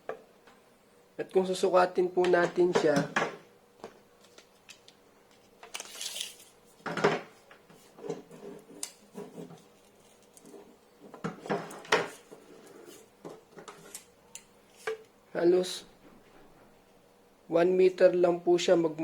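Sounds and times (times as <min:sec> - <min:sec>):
cable rustling: 0:04.2 - 0:15.1.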